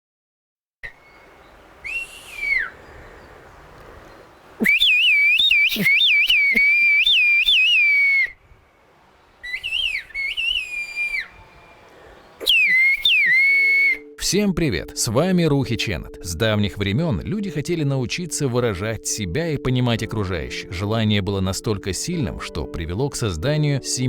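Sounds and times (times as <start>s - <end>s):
person whistling in phrases: 1.8s - 2.8s, 4.6s - 8.4s, 9.4s - 11.5s, 12.4s - 14.2s.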